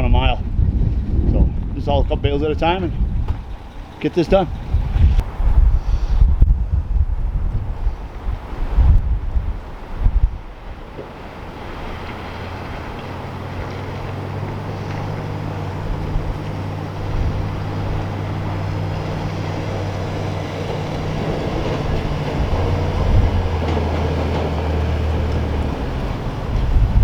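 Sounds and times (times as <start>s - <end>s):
road and wind noise: 0.0s - 27.0s
vehicle engine running: 11.6s - 27.0s.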